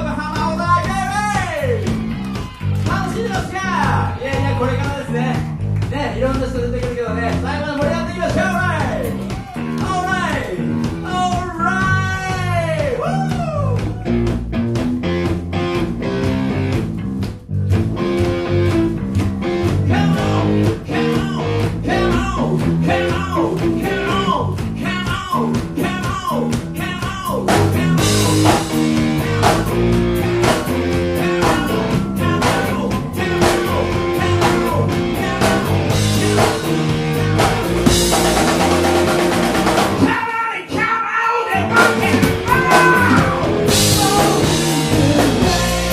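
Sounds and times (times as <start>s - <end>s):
bass guitar: 0.0s - 40.2s, 41.5s - 45.9s
drum kit: 0.0s - 40.3s, 41.5s - 45.9s
electric guitar bending notes: 13.8s - 22.8s, 27.5s - 40.1s, 41.6s - 45.9s.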